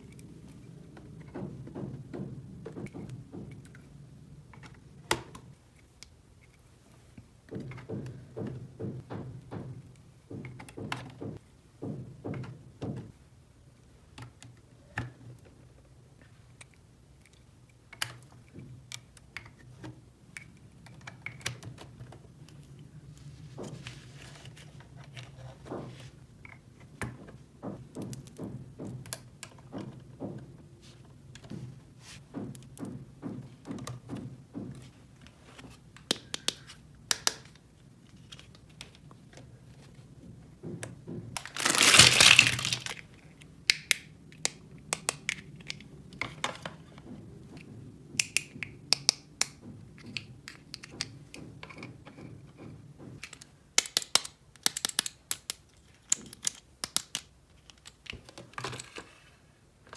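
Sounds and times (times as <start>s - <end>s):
plastic toy pieces clicking: 41.4s - 43.1s, 53.2s - 58.1s.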